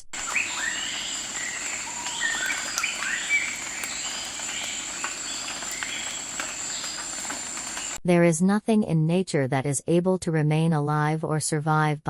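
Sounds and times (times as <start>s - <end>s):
birds chirping: 0.2s - 8.0s.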